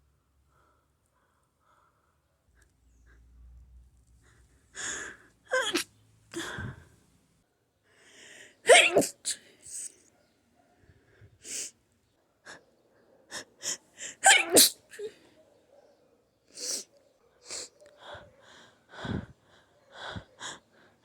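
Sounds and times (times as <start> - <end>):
person sneezing: 5.5 - 5.8, 8.7 - 9.9, 14.2 - 15.1.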